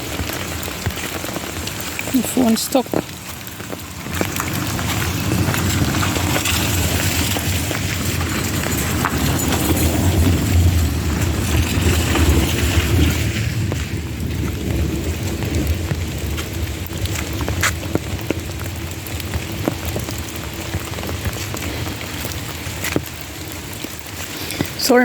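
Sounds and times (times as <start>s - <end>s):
steady rain falling: 0.0s - 25.0s
low rumble: 2.9s - 22.6s.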